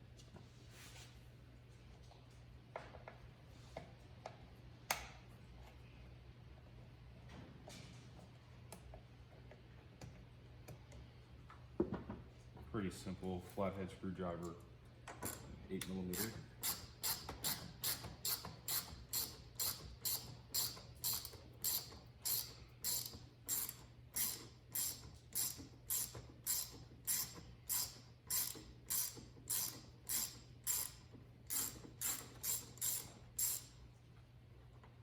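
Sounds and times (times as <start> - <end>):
hand ratchet clicking: 15.2 - 33.8.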